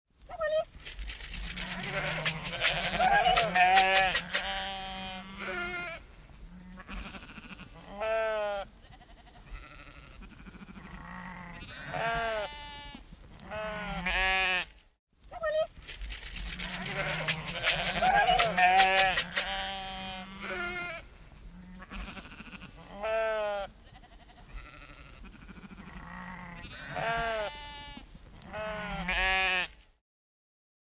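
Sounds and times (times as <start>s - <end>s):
sheep bleating: 0.9s - 14.8s, 16.4s - 29.8s.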